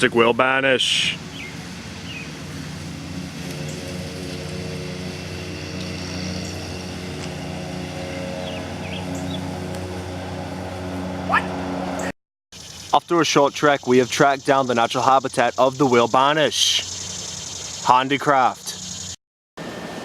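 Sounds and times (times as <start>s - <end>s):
motor running steadily: 1.0s - 13.0s, 16.9s - 18.0s, 18.6s - 20.0s.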